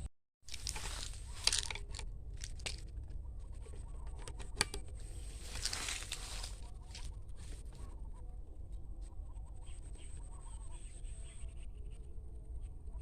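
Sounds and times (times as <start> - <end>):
rustling: 0.5 - 7.9.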